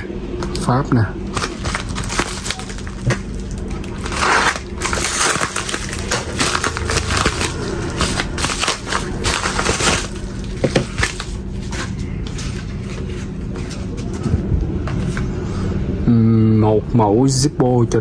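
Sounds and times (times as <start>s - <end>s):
packaging tearing and crinkling: 0.4s - 14.3s.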